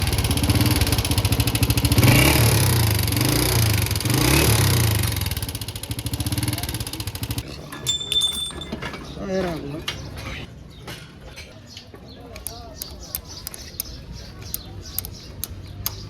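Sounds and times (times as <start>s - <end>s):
motorcycle engine revving: 0.0s - 7.4s.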